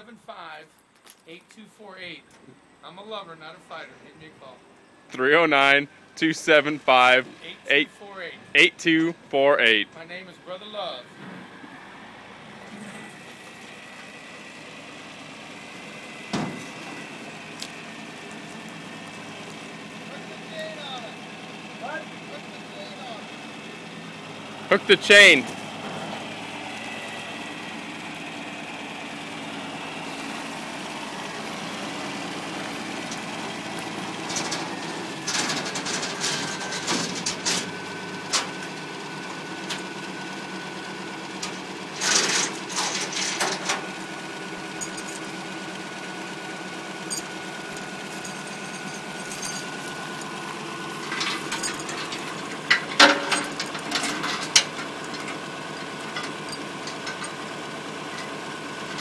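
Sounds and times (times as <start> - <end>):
engine idling: 12.1 - 59.0
chain clanking and rattling: 34.3 - 40.2, 41.4 - 50.3, 50.9 - 57.4, 58.1 - 59.0.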